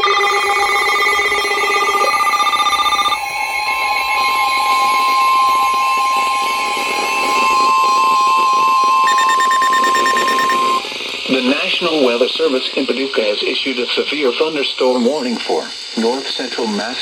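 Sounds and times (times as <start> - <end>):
loud steady alarm tone: 0.0 - 12.6
faint changing tones: 0.0 - 12.9.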